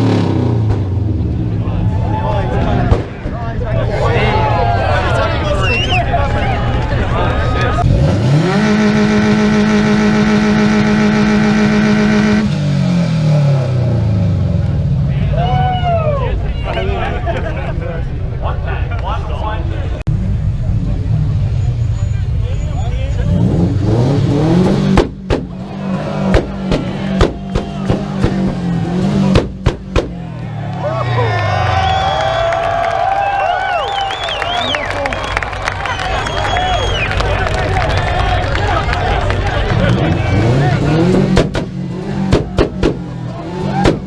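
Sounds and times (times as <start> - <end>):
car engine revving: 0.0 - 1.9, 6.2 - 15.2, 20.0 - 32.5, 35.6 - 44.0
sharp exhaust bangs: 7.8 - 14.2, 23.2 - 30.4, 37.8 - 44.0.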